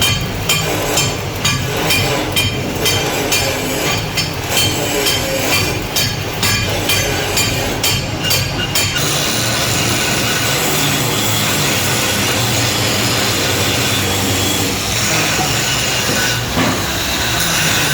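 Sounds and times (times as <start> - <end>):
hammer knocking on steel: 0.0 - 9.1.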